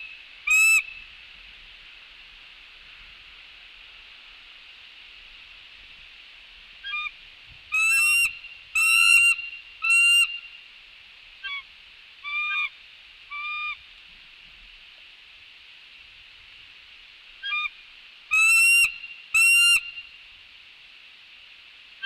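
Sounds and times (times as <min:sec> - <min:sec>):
eagle calling: 0:00.0 - 0:01.0, 0:07.7 - 0:10.6, 0:12.2 - 0:12.7, 0:17.4 - 0:17.7, 0:18.3 - 0:20.1.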